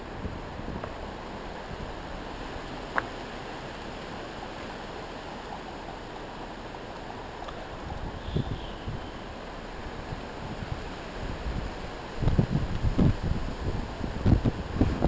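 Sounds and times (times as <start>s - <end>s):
storm wind gusting: 7.1s - 15.0s.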